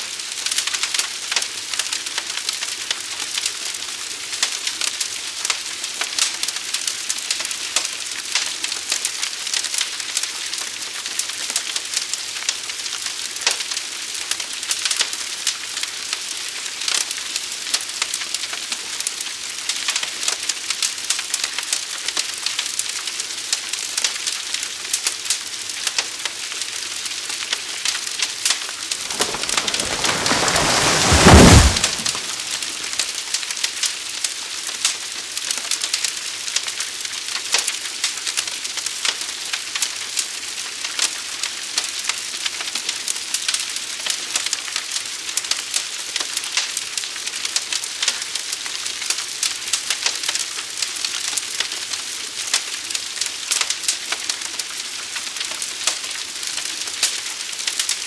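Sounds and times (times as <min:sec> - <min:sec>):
fire crackling and popping: 0:29.0 - 0:32.6
low rushing surge: 0:29.1 - 0:32.6.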